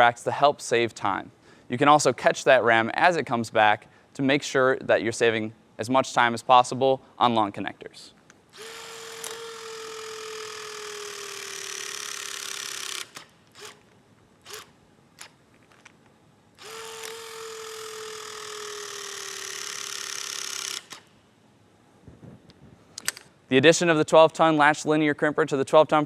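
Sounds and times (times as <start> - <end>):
hydraulic crimper motor and pump: 8.5 - 16.0, 16.6 - 21.2.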